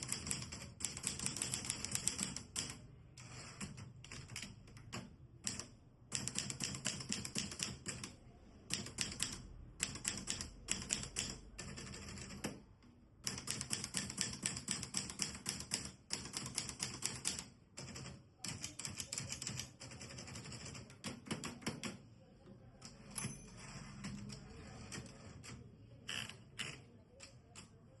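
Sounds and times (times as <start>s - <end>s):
manual typewriter keystrokes: 0.0s - 12.6s, 13.2s - 22.0s.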